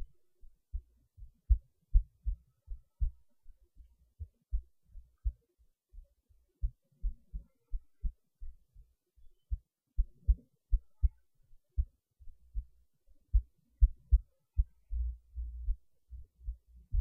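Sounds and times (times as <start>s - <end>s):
heartbeat thumps: 0.0s - 5.4s, 6.0s - 11.2s, 11.8s - 17.0s
low rumble: 12.5s - 17.0s.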